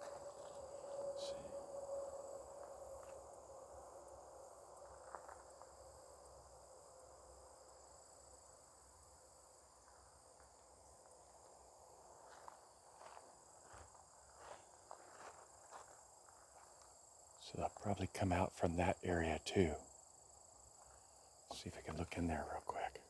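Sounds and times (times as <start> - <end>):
faint insect trilling: 0.0 - 10.5.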